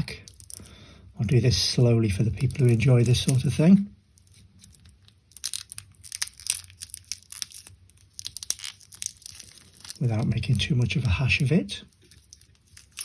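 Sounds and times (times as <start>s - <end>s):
plastic sticker peeling: 2.2s - 3.6s, 4.2s - 10.7s, 11.9s - 13.0s.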